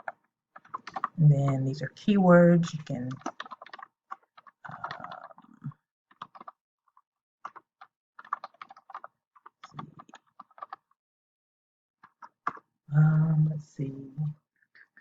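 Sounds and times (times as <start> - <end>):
typing on computer keyboard: 0.0 - 10.9, 12.0 - 12.6.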